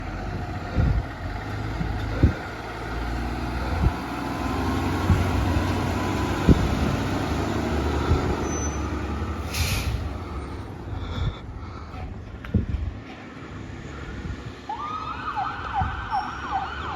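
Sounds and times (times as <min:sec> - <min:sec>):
fire engine running: 0:00.0 - 0:16.9
sharp thumps: 0:01.7 - 0:02.5, 0:05.0 - 0:07.0
short hiss: 0:09.5 - 0:10.1.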